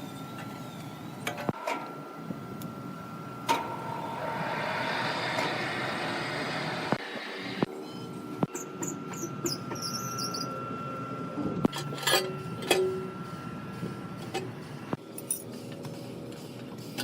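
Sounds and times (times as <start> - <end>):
woodturning lathe whining: 3.6 - 7.7
high wavering squeaks: 7.0 - 13.8.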